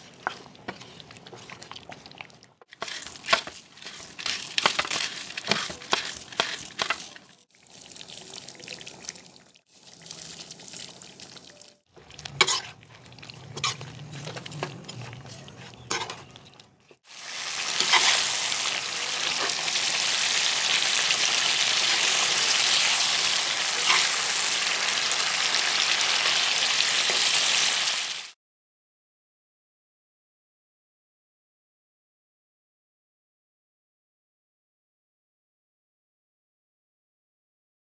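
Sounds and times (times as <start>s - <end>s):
stirring clicks and knocks: 0.0s - 17.0s
food frying in hot oil: 2.8s - 14.8s, 17.0s - 28.4s.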